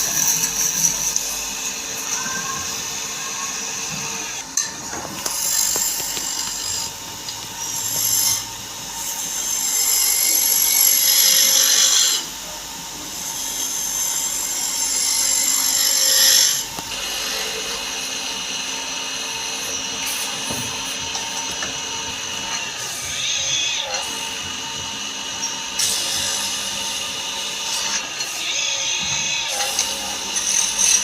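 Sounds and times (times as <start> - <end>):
power tool rubbing against wood: 19.4 - 31.0.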